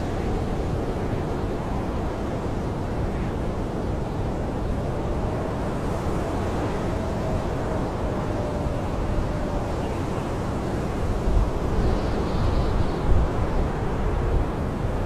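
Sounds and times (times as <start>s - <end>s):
wind howling: 0.0s - 15.0s.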